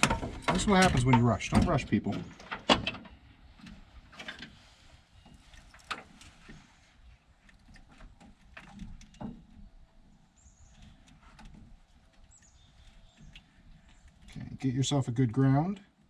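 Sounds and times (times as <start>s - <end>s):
light clicks and knocks of tools: 0.0s - 4.6s, 10.7s - 14.5s.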